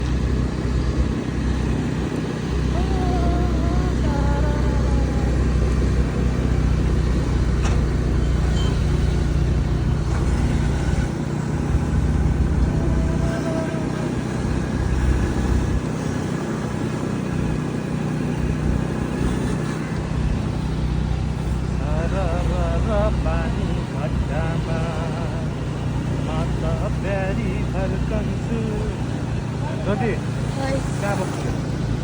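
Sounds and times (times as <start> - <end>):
motor vehicle rumbling: 0.0 - 32.0.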